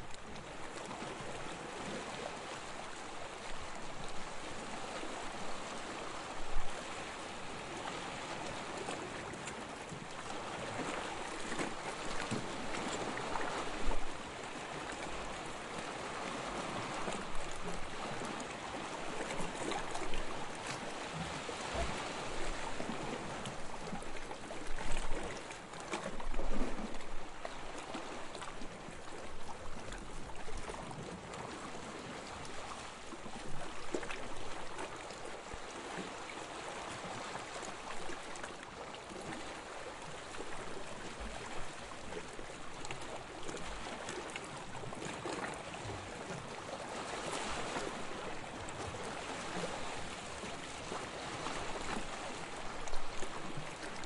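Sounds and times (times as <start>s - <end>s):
sea water lapping: 0.0s - 54.0s.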